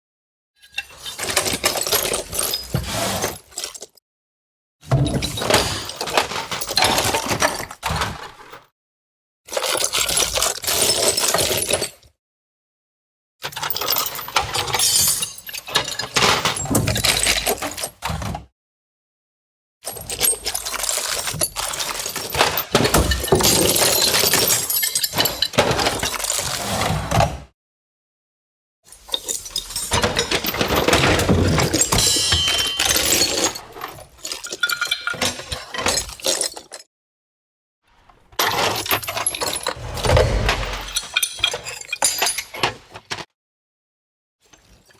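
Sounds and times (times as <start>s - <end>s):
tools clinking in a toolbox: 13.5s - 17.8s, 19.9s - 26.4s, 28.9s - 36.9s, 38.4s - 42.8s.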